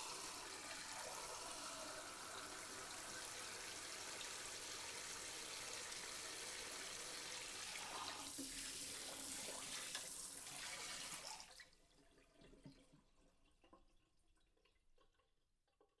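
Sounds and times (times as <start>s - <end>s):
faint water drips: 11.2s - 16.0s.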